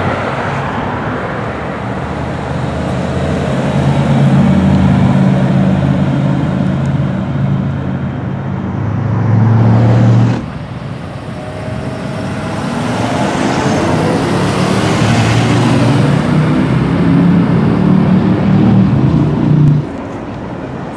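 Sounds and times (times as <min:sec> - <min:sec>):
loud deep car exhaust: 0:01.3 - 0:20.1
car accelerating away: 0:08.7 - 0:20.0.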